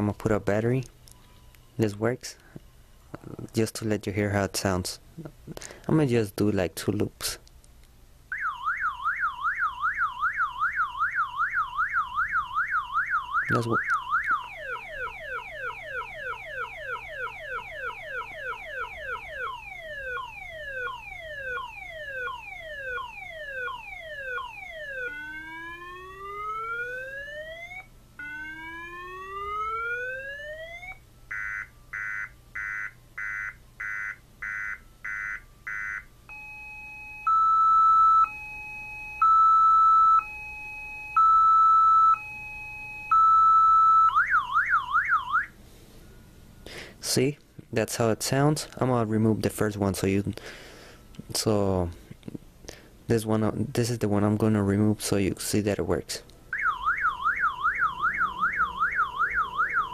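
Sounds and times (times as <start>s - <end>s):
car alarm siren: 8.3s - 46.4s, 56.5s - 59.9s.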